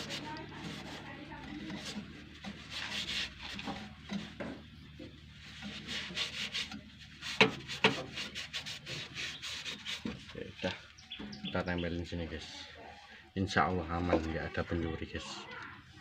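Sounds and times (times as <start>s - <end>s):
tissue wiping a surface: 2.6s - 3.6s, 5.4s - 10.4s.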